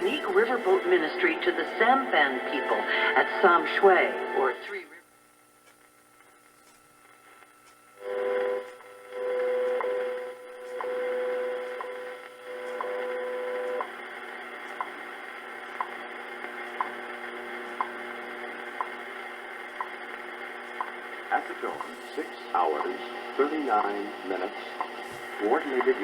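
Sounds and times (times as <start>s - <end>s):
steady radio tone: 0.0s - 5.0s, 18.7s - 26.0s
hum and static: 0.0s - 26.0s
time signal ticks: 7.6s - 7.8s, 9.6s - 10.0s, 10.7s - 11.0s, 11.6s - 12.0s, 12.6s - 13.0s, 14.7s - 15.0s, 15.8s - 16.0s, 16.8s - 17.0s, 17.8s - 18.0s, 18.8s - 19.0s, 19.8s - 20.0s, 20.8s - 21.0s, 21.7s - 22.0s, 22.7s - 23.0s, 24.8s - 26.0s.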